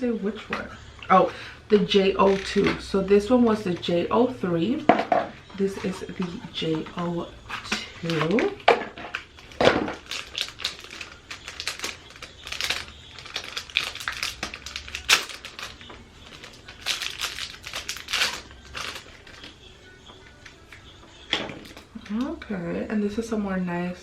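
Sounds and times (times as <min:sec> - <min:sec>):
packaging crinkling and clicking: 0:07.6 - 0:19.6
packaging snap: 0:09.9 - 0:19.5.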